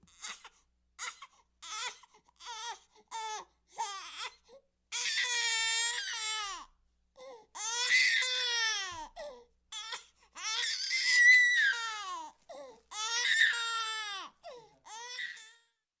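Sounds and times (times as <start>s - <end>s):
baby wailing: 0.1s - 6.7s, 7.6s - 9.1s, 9.8s - 15.6s.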